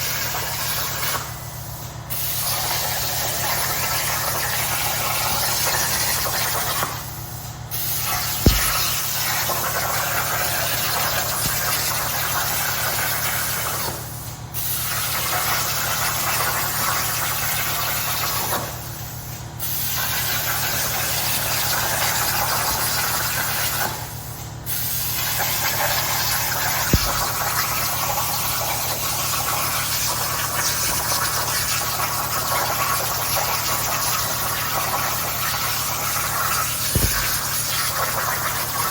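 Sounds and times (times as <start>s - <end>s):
plasma torch hissing: 0.4s - 38.9s
steady low hum: 8.3s - 9.5s, 26.8s - 28.0s, 36.6s - 37.8s
sharp clicks: 37.0s - 37.5s.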